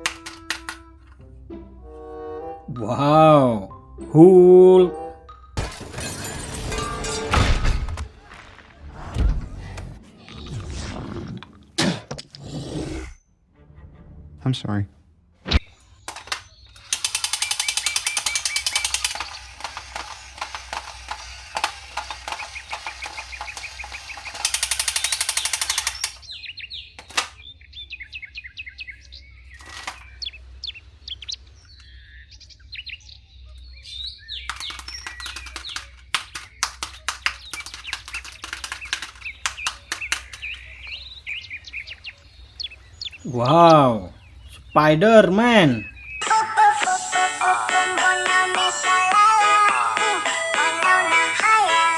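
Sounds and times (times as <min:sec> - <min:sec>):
toy packaging crinkling and rattling: 0:00.0 - 0:01.2, 0:16.0 - 0:26.3, 0:27.0 - 0:27.4, 0:29.5 - 0:30.3, 0:34.4 - 0:40.9
birds chirping: 0:15.6 - 0:51.9.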